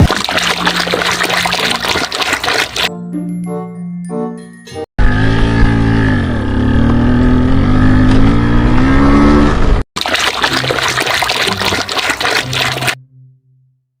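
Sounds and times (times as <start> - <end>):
engine running: 5.0 - 9.8.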